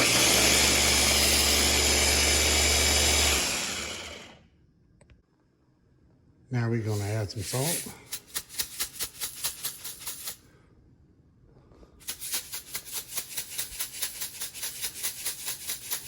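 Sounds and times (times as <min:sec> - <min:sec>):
salt shaker rattling: 0:07.4 - 0:10.4, 0:12.0 - 0:16.0.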